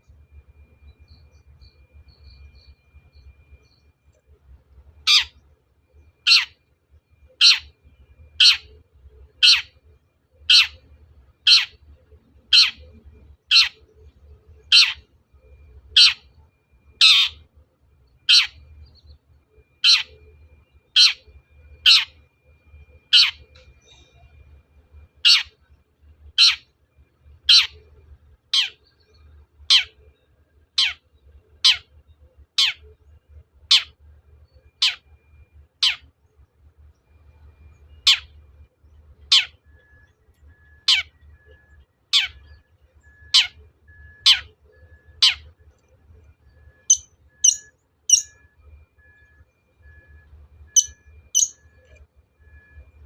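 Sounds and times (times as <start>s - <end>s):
shrike harsh rasping calls: 46.9s - 48.3s, 50.8s - 51.6s.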